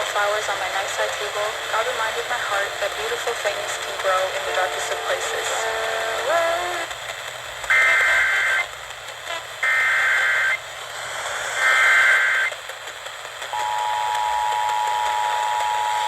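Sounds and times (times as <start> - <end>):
radio hiss: 0.0 - 16.0
two-tone attention signal: 13.6 - 16.0.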